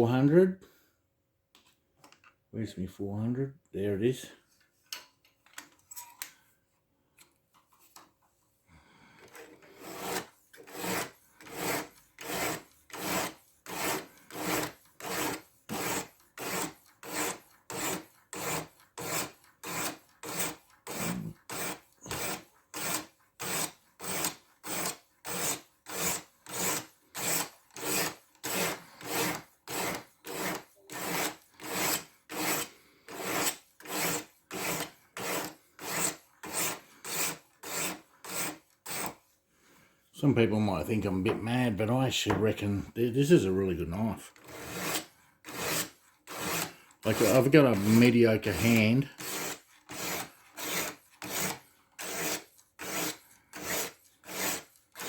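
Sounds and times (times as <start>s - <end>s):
stone scraping along knife blade: 9.4s - 39.2s, 44.4s - 55.0s.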